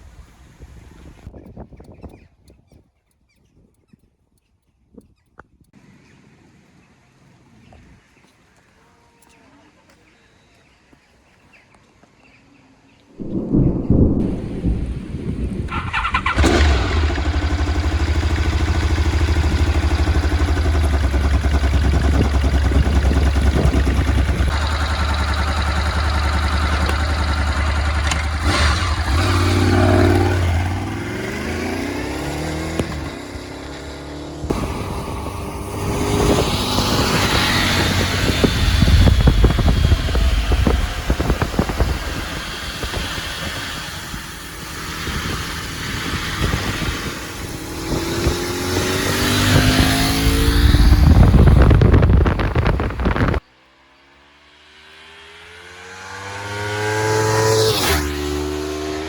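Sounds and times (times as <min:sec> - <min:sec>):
motorcycle engine revving: 0:13.2 - 0:53.4, 0:54.2 - 0:59.0.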